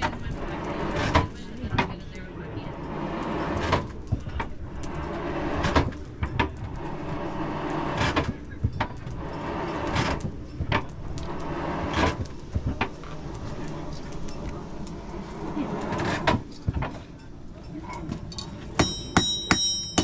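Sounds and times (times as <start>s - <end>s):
hammer striking iron on anvil: 18.8s - 20.0s.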